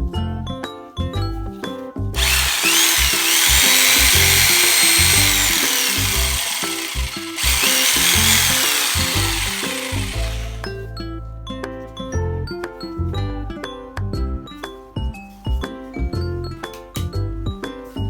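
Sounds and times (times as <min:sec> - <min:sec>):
power tool motor whining: 0:02.2 - 0:10.7.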